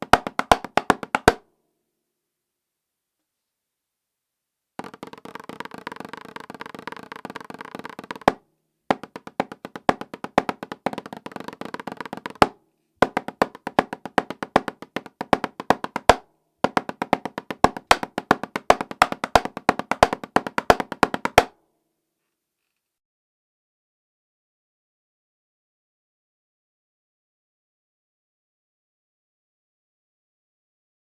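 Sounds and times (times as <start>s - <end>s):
drumsticks tapping practice pad: 0.0s - 1.4s, 4.8s - 21.5s.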